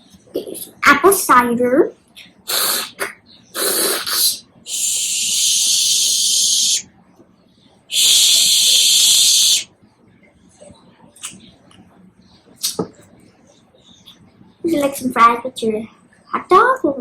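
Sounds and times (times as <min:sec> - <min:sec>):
steady hissing: 0:02.5 - 0:06.8, 0:07.9 - 0:09.7.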